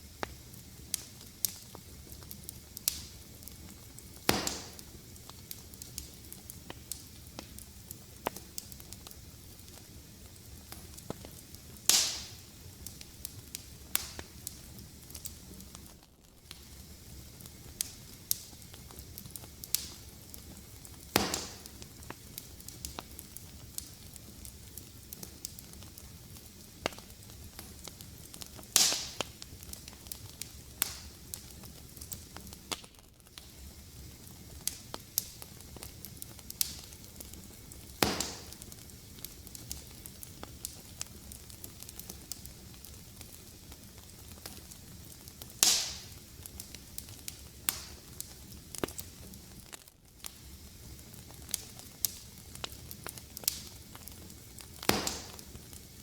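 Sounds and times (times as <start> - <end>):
fire crackling: 0.0 - 56.0
low rumble of flames: 0.0 - 56.0
loud sharp pops: 4.2 - 5.0, 11.9 - 12.4, 21.1 - 22.2, 28.7 - 29.3, 37.9 - 38.8, 45.6 - 46.2, 54.8 - 55.7.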